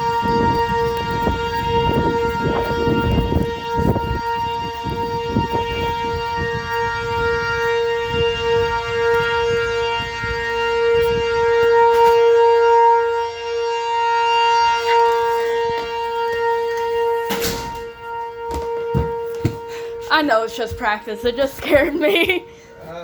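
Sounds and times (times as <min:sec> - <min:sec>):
tornado warning siren: 0:00.0 - 0:23.0
low thuds: 0:15.6 - 0:22.1.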